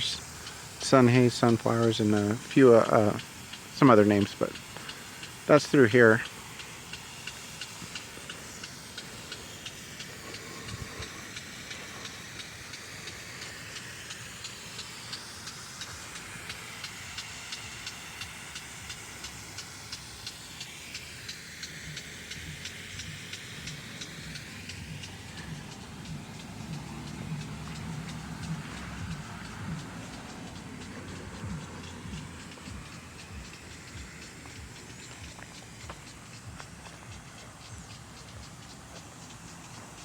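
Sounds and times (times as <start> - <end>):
impact sprinkler spraying and ticking: 0.0 - 40.0.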